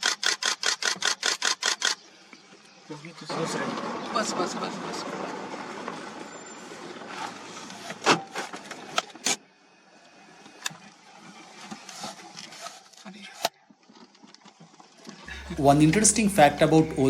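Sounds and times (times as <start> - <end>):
small clicks: 0.0 - 2.0
car driving on dirt track: 3.2 - 12.2.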